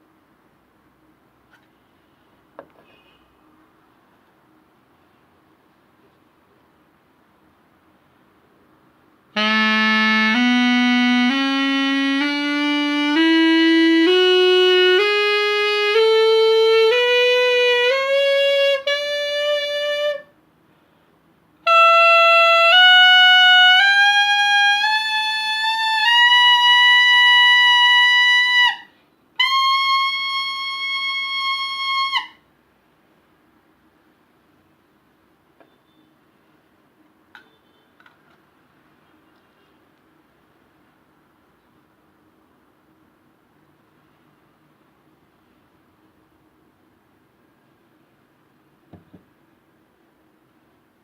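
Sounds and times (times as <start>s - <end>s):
bamboo sax playing a scale: 9.3s - 20.3s, 21.6s - 32.4s.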